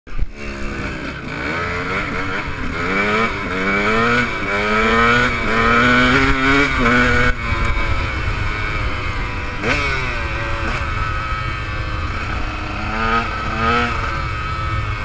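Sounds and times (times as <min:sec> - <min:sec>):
dirt bike engine revving: 0:00.1 - 0:15.0.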